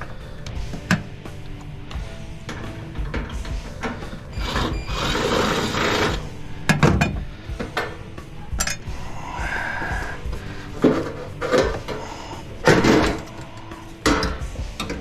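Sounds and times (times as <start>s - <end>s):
power drill running: 4.4s - 6.3s.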